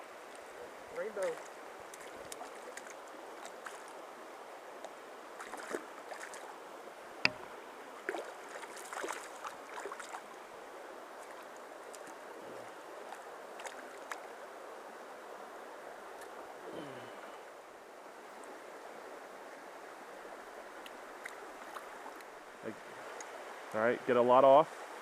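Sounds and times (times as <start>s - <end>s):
stream running over rocks: 0.0s - 25.0s
small splashes: 1.2s - 4.0s, 5.4s - 6.5s, 7.2s - 10.4s, 13.0s - 14.3s.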